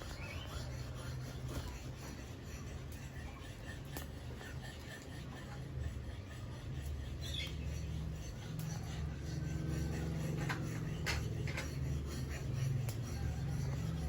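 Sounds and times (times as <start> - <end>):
low steady hum: 0.0 - 14.0
clicks and scratches: 6.8 - 14.0.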